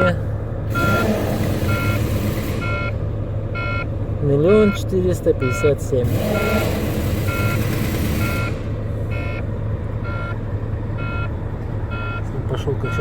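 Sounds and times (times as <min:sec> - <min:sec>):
diesel engine idling: 0:00.0 - 0:13.0
warning buzzer beeping: 0:00.7 - 0:03.0, 0:03.6 - 0:09.4.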